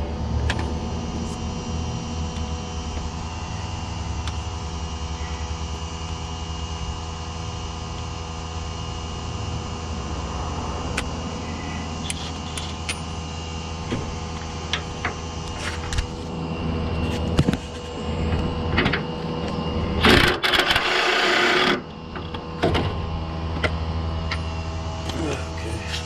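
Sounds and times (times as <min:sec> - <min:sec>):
steady background hum: 0:00.0 - 0:26.0
impact wrench running: 0:20.0 - 0:21.9.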